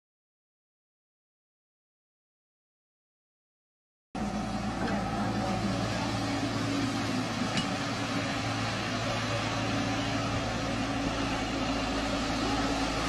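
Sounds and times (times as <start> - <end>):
diesel engine humming: 4.2 - 13.0.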